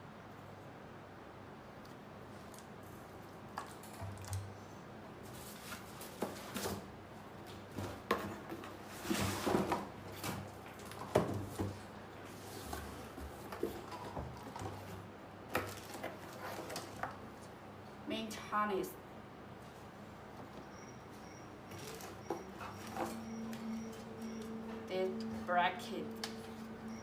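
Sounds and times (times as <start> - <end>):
packaging rustling: 15.6 - 17.2.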